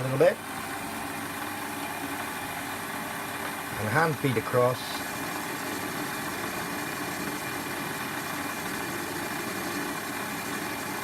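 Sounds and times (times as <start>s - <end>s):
metal lathe motor hum: 0.0s - 11.0s.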